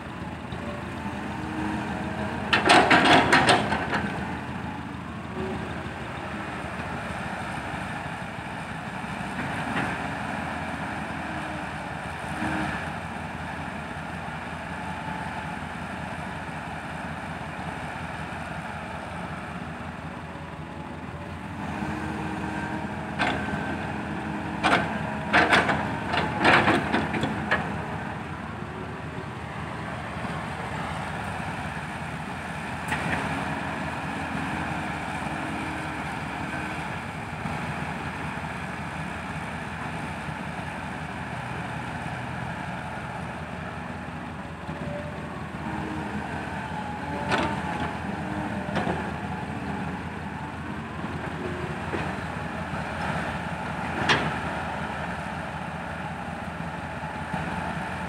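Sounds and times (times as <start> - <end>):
diesel truck engines running: 0.0 - 58.0.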